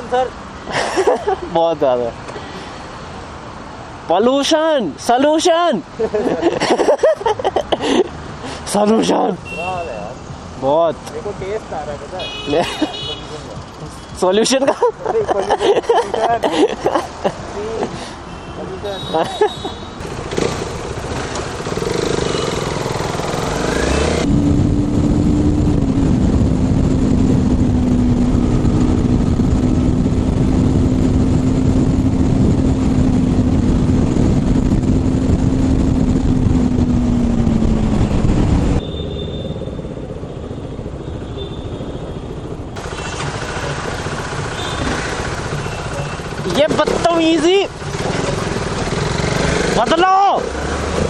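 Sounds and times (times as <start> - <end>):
road rumble: 0.0 - 51.0
traffic noise: 0.0 - 51.0
motorcycle engine running: 20.0 - 38.8, 42.4 - 51.0.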